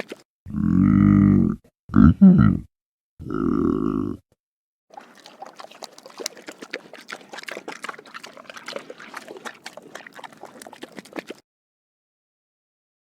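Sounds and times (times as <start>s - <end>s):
pig slurping water: 0.0s - 0.2s, 4.9s - 11.4s.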